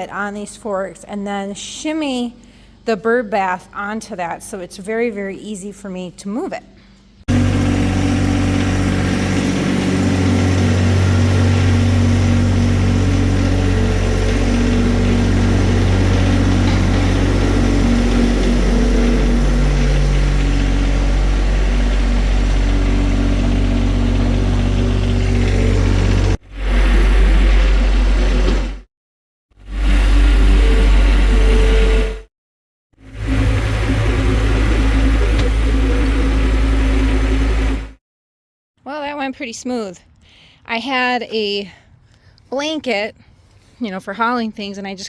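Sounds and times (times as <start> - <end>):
diesel tractor engine running: 7.3 - 28.7, 33.0 - 37.9.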